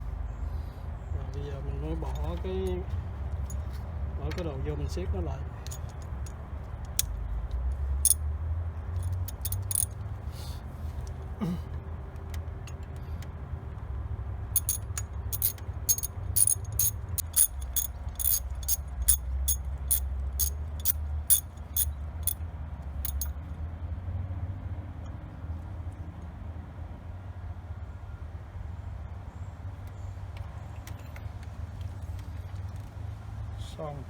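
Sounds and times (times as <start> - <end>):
low steady rumble: 9.0 - 9.9
ratchet wrench clicking: 9.0 - 9.9, 14.6 - 22.4, 23.1 - 23.3.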